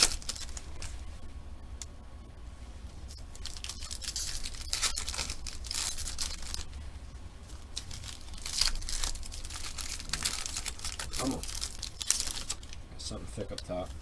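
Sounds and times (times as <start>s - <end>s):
plastic wrapping tearing and crinkling: 0.0s - 1.0s, 3.1s - 6.8s, 7.5s - 12.8s.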